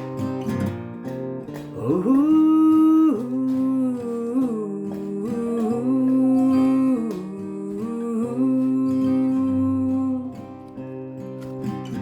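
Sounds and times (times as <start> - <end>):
acoustic guitar: 0.0 - 12.0
person humming a melody: 1.8 - 10.7.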